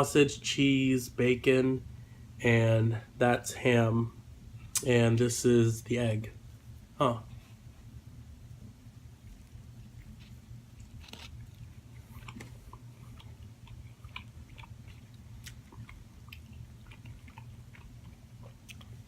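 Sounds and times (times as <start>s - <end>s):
steady low hum: 0.0s - 19.0s
person chewing food: 9.2s - 19.0s.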